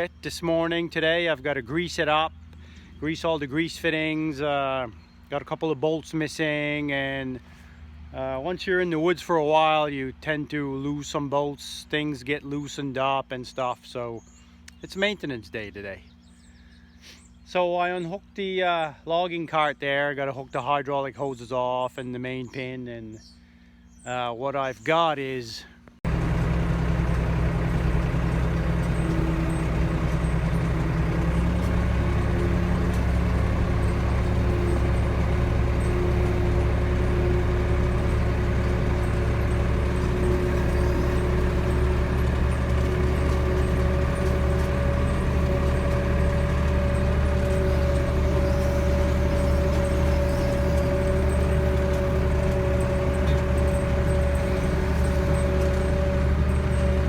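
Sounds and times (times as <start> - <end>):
tractor engine running: 26.0 - 57.0.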